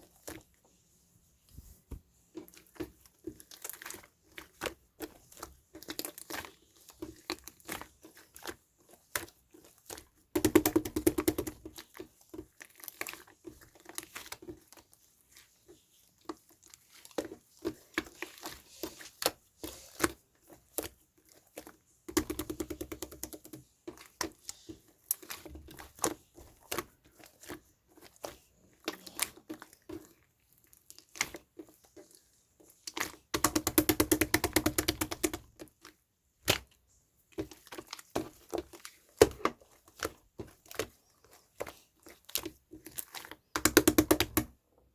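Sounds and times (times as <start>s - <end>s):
paper and plastic crinkling: 23.6s - 33.3s.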